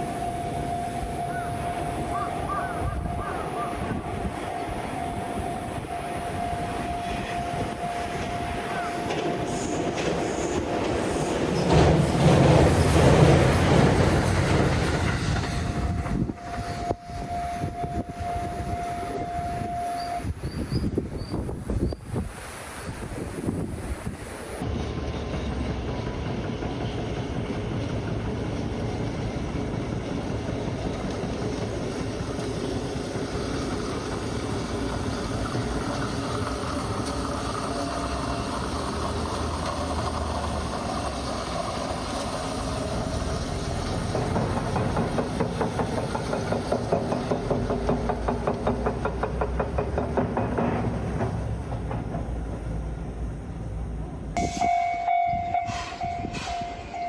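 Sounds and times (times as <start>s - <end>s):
train rumbling past: 0.0s - 57.0s
train wheels clattering: 6.8s - 17.7s, 24.6s - 53.5s
steady pitched tone: 54.4s - 57.0s.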